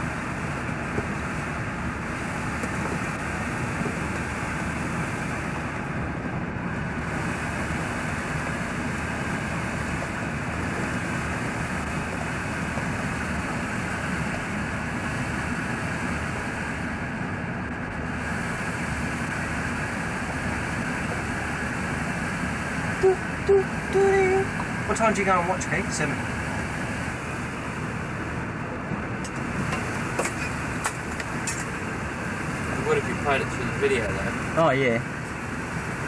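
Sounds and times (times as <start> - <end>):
low hum: 0.0 - 36.0
machinery and ventilation noise: 0.0 - 36.0.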